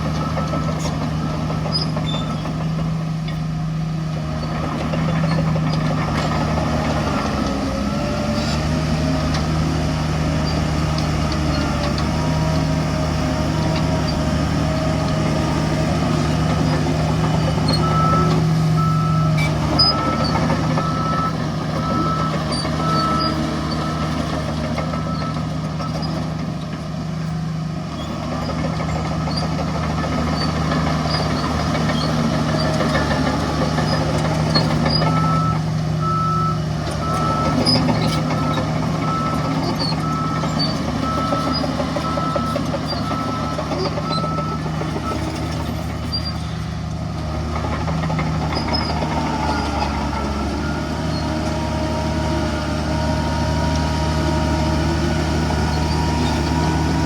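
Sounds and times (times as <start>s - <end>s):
heavy diesel machinery running: 0.0s - 57.0s
reversing alarm beeping: 17.2s - 26.2s, 34.9s - 45.6s, 48.7s - 53.7s.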